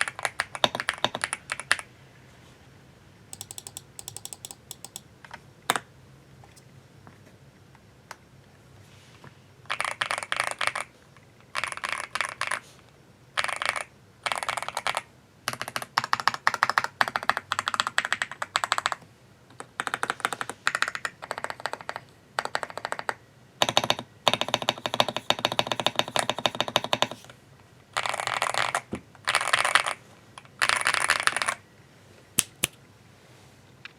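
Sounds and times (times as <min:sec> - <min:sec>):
mechanical keyboard typing: 0:00.0 - 0:01.8, 0:03.4 - 0:05.0, 0:13.4 - 0:19.0, 0:19.8 - 0:27.2.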